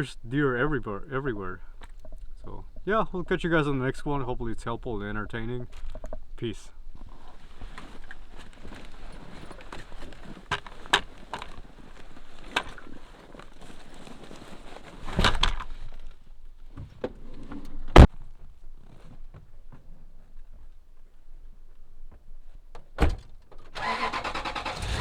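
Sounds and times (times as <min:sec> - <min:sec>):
rustling: 0:00.9 - 0:20.7.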